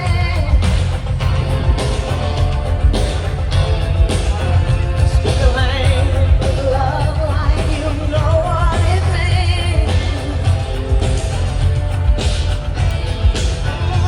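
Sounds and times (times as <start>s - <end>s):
person singing with vibrato: 0.0s - 2.0s, 4.2s - 11.3s
pop-rock music with heavy bass: 0.0s - 14.0s.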